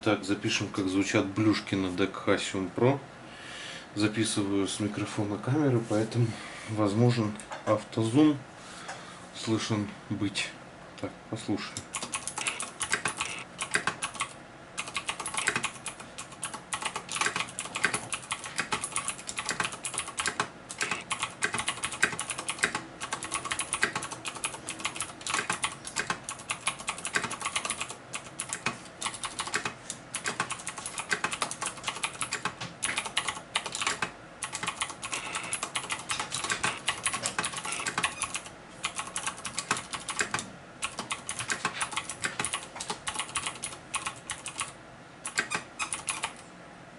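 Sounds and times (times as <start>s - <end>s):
clicky mechanical keyboard typing: 11.8s - 46.4s.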